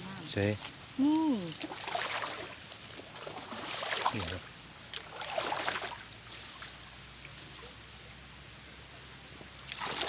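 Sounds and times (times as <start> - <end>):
water sloshing around wading person: 1.3 - 7.8, 9.5 - 10.0
water splashing: 1.3 - 7.8, 9.6 - 10.0.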